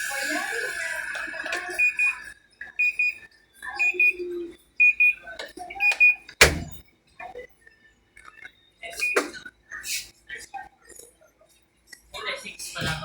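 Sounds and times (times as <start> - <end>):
washing machine double beeps: 1.4 - 6.8, 8.8 - 9.5.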